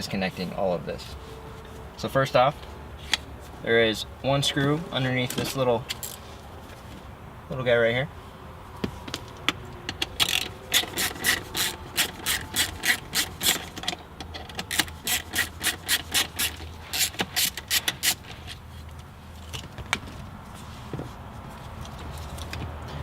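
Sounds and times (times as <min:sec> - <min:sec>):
screw being turned out: 0:09.4 - 0:18.6.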